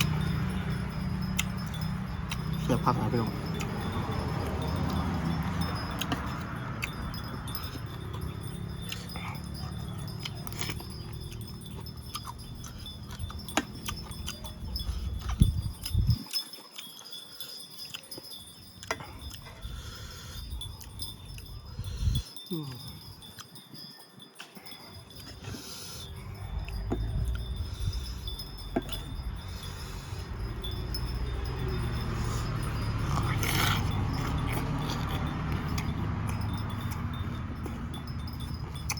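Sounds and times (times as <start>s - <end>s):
person chewing with crunches: 0.0s - 38.9s.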